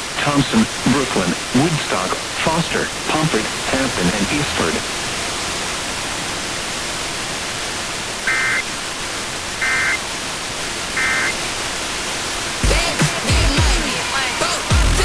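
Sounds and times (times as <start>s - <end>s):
fm radio static hiss: 0.0s - 15.0s.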